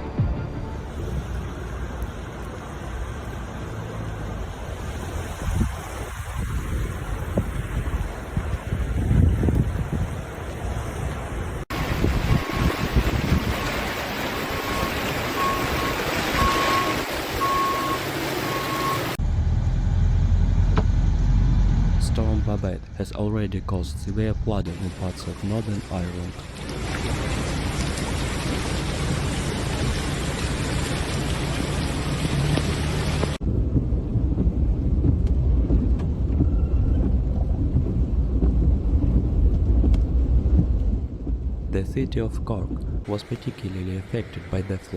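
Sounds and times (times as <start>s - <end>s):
low engine rumble: 11.1s - 44.9s
reversing alarm beeping: 12.2s - 13.0s, 14.5s - 19.2s.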